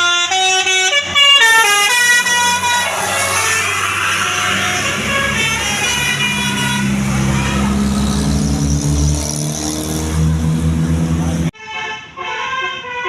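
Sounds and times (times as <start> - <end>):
musical bus horn: 0.0 - 3.6, 4.2 - 8.5, 11.2 - 13.0.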